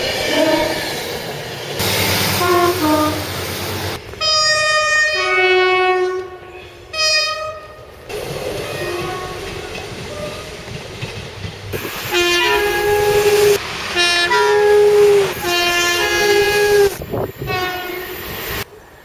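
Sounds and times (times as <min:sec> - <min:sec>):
train running noise: 0:00.0 - 0:19.0
train air horn blasts: 0:00.2 - 0:00.8, 0:01.8 - 0:03.4, 0:04.2 - 0:07.9, 0:08.6 - 0:09.5, 0:11.8 - 0:18.2.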